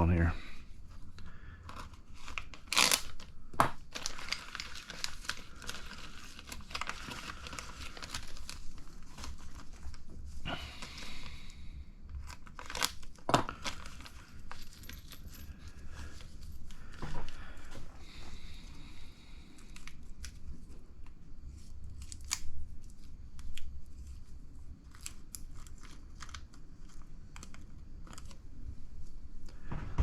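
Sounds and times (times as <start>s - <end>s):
plastic bag rustling: 0.2s - 11.5s, 12.1s - 19.0s.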